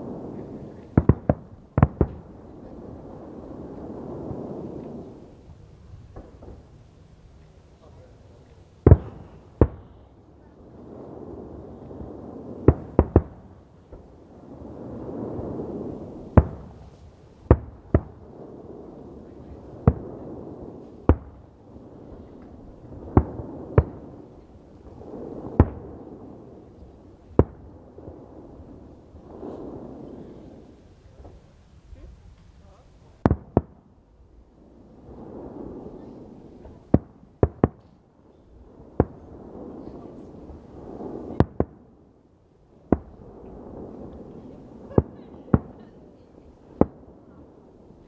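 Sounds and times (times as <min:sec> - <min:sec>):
soft murmur: 0:00.0 - 0:01.1, 0:02.0 - 0:12.1, 0:28.5 - 0:33.3, 0:35.8 - 0:36.9, 0:38.2 - 0:41.4, 0:43.4 - 0:47.8
fireworks bangs: 0:00.0 - 0:48.0.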